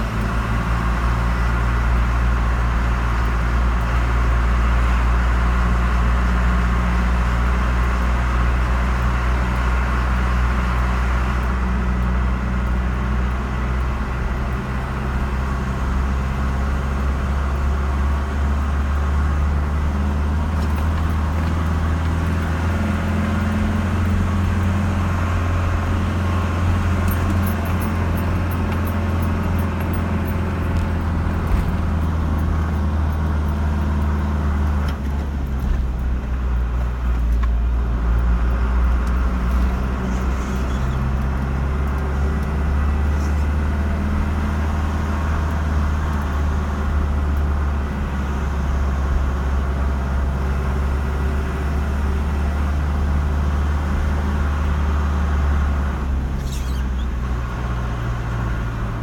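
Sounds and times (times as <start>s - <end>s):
car engine and tyre rumble: 0.0s - 59.0s.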